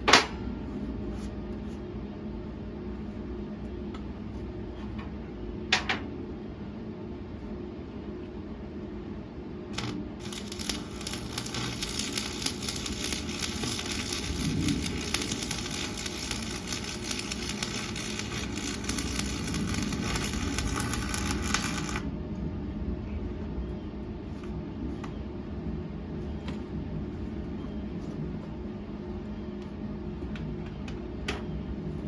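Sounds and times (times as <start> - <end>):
steady low hum: 0.0 - 32.0
arc welding crackle: 9.7 - 22.1.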